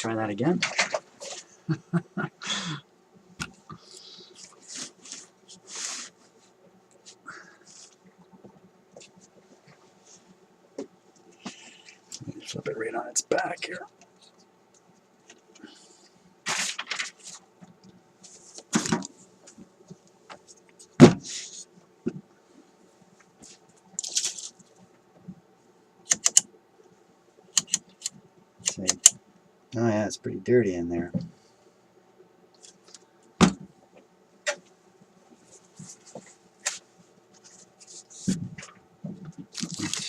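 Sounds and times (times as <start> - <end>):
thump: 21.0 - 21.3, 33.4 - 33.7.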